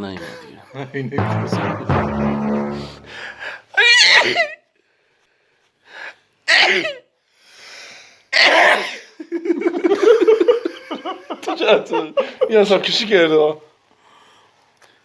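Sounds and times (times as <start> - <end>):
loud sneezes: 8.4 - 9.0.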